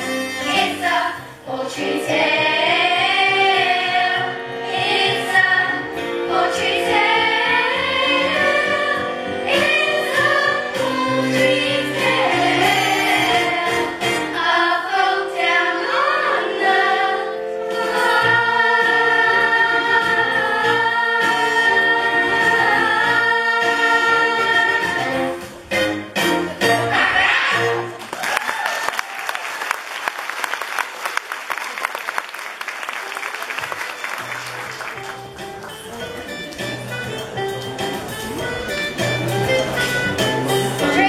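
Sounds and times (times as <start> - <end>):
backing music: 0.0 - 28.2, 33.0 - 41.0
group singing: 0.5 - 25.3.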